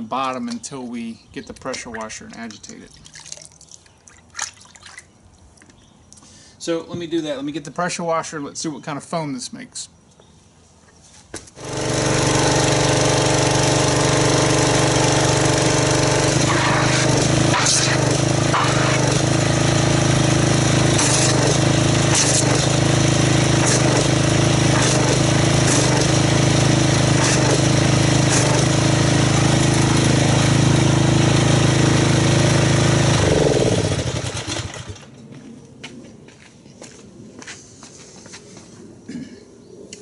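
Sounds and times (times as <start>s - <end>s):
pressure washer spraying: 11.6s - 33.1s
motor winding down: 11.6s - 35.1s.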